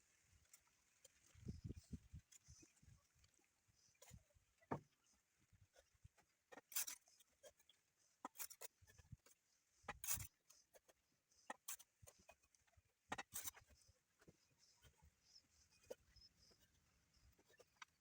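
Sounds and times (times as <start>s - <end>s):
trowel and bricks scraping: 6.5s - 9.2s, 9.9s - 10.9s, 11.5s - 12.5s, 13.1s - 13.8s.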